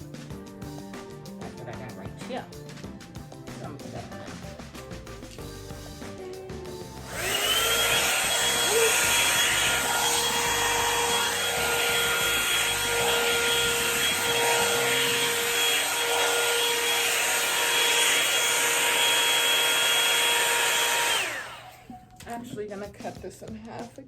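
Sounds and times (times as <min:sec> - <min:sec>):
hair dryer blowing air: 0:05.8 - 0:22.1
fan spinning down: 0:07.0 - 0:22.0
motor whine: 0:07.0 - 0:22.0.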